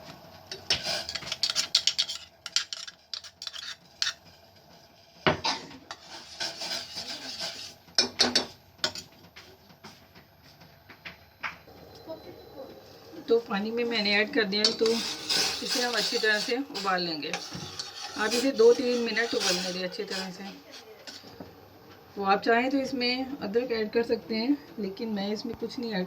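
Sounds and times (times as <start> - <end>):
spoon scraping and clinking dish: 0.5 - 4.2, 14.6 - 21.3.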